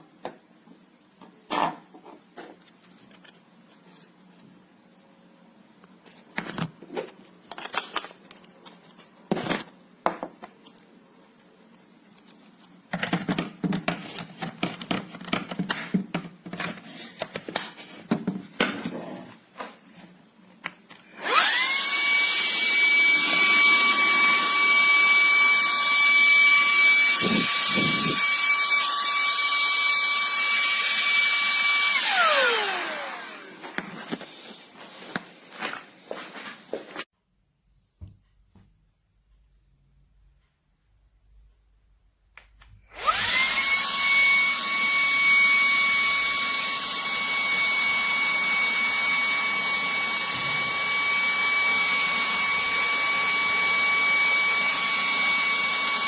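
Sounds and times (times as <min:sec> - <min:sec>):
handheld vacuum whine: 0:21.0 - 0:34.6, 0:42.8 - 0:56.0.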